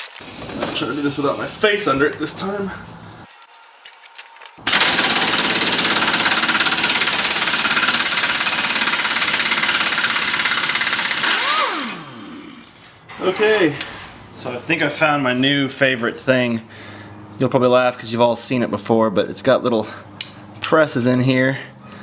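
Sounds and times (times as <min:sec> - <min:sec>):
power tool motor running: 0:00.2 - 0:01.6, 0:04.6 - 0:12.9.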